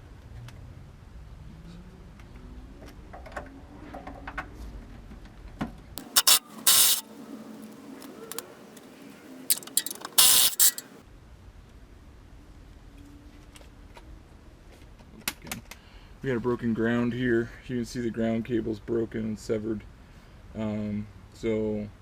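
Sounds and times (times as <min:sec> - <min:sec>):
loud short mechanical bursts: 0:06.0 - 0:07.2, 0:09.4 - 0:11.0
tool clicks and clanks: 0:06.0 - 0:08.9, 0:09.5 - 0:11.0.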